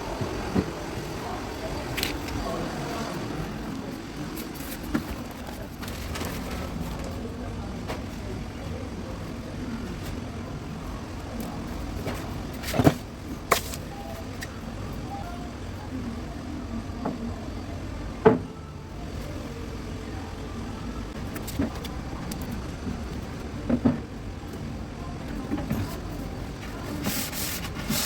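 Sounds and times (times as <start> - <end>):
steady low rumble: 21.1 - 25.3.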